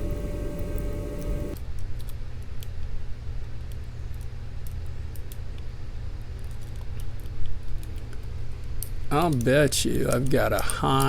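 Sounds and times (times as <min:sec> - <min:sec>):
steady low rumble: 0:00.0 - 0:01.6.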